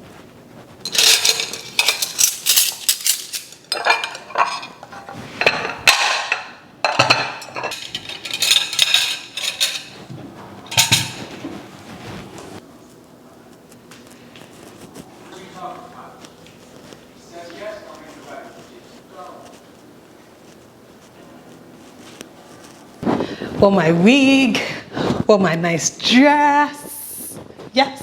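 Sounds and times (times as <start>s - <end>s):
plates and cutlery clinking: 0.8s - 11.8s.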